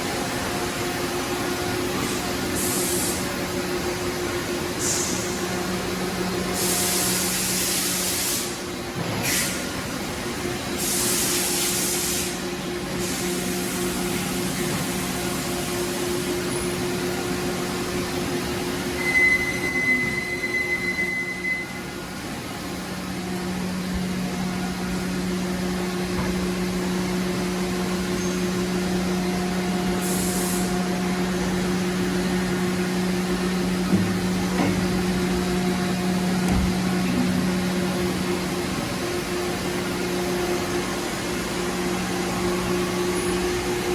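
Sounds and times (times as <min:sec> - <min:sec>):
lathe machine hum: 0:21.8 - 0:43.9.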